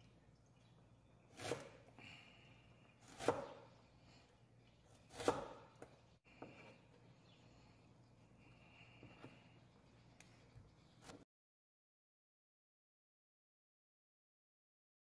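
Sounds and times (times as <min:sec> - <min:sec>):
knife chopping on cutting board: 0:01.3 - 0:01.9, 0:03.0 - 0:03.7, 0:04.9 - 0:06.7.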